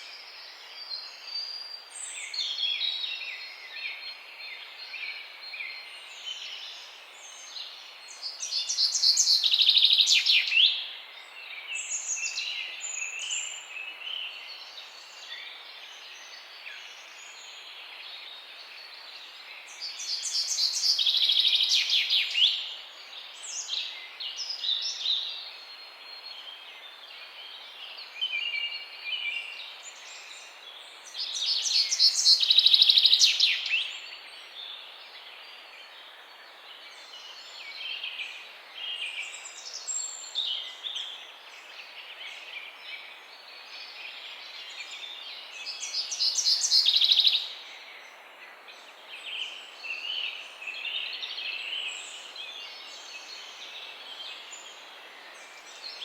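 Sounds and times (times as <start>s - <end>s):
steady background hiss: 0.0s - 56.0s.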